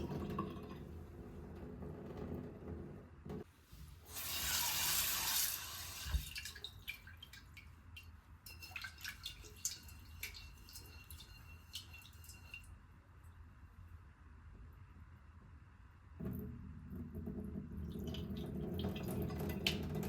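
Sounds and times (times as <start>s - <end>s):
water running from a tap: 4.1s - 7.4s, 17.8s - 20.0s
water dripping: 4.2s - 12.7s, 17.2s - 20.0s.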